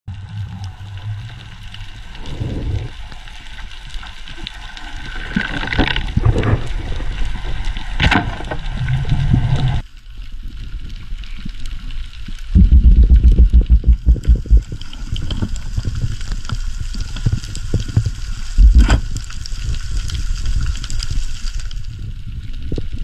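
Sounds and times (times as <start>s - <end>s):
low rumble: 0.1s - 3.8s, 12.5s - 16.3s, 17.4s - 20.9s
water sloshing and gurgling: 0.1s - 9.8s, 12.5s - 22.9s.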